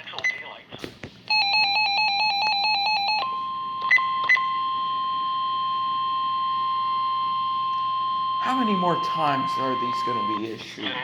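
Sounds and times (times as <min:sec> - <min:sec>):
steady warning alarm tone: 0:01.3 - 0:10.9
short beeps: 0:08.4 - 0:10.7.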